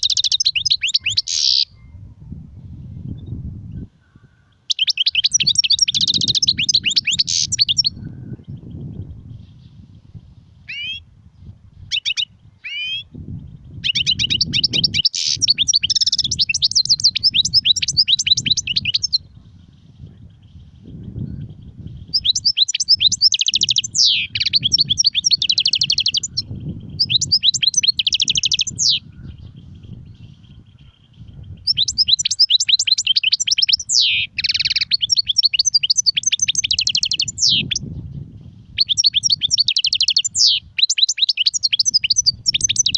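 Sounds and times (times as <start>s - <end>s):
goldfinch twittering song: 0.0s - 2.0s, 3.1s - 42.9s
short bird chirps: 0.0s - 2.0s.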